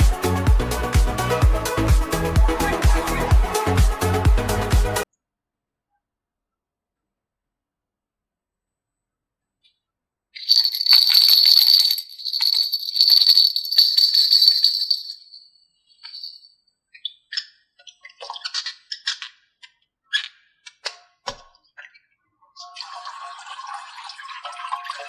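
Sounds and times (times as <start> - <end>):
bright jingling rattle: 10.4 - 16.5.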